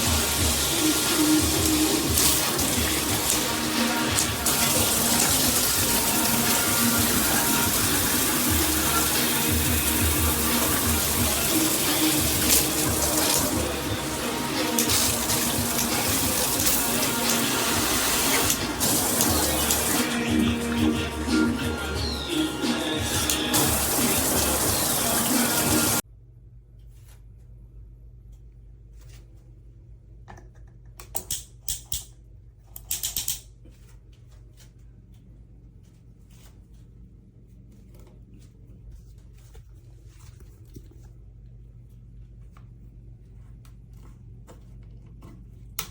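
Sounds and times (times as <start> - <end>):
water spraying from shower head: 0.0 - 26.0.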